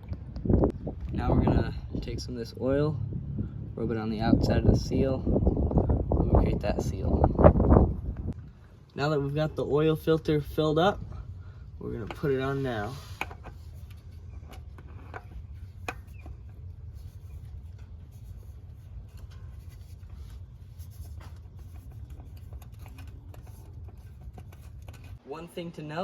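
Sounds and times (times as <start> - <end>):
low rumble: 0.0 - 8.9
oil filter being threaded on: 11.0 - 25.2
faint scratching: 11.8 - 25.2.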